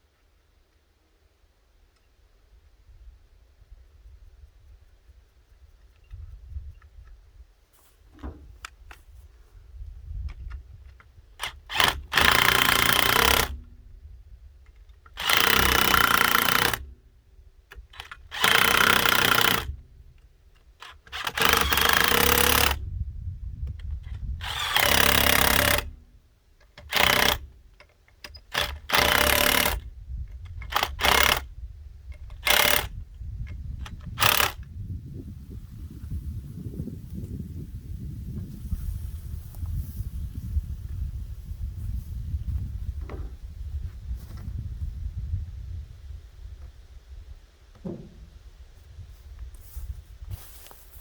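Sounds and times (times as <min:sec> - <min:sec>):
impact wrench running: 0:11.4 - 0:13.8, 0:15.2 - 0:17.0, 0:17.9 - 0:19.9, 0:20.8 - 0:22.8, 0:24.4 - 0:26.1, 0:26.7 - 0:29.9, 0:30.6 - 0:31.5, 0:32.2 - 0:33.0, 0:33.8 - 0:34.7.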